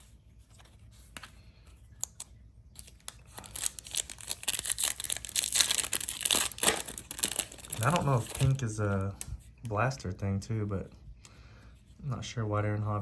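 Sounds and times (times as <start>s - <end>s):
foil wrapper tearing and crinkling: 2.8s - 8.6s.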